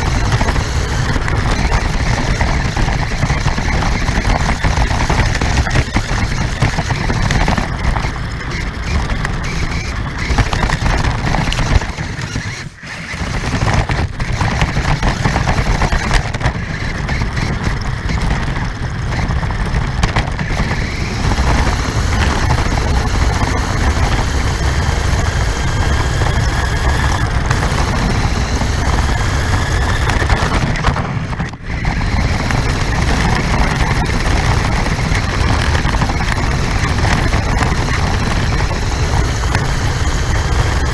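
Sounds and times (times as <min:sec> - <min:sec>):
motor and gears whining: 0:00.0 - 0:40.9
wheels rumbling over ground: 0:00.0 - 0:40.9.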